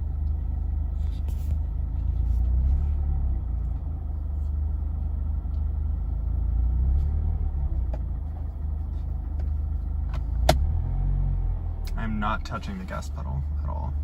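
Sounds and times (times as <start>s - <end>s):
car engine idling roughly: 0.0s - 6.4s, 7.8s - 10.6s.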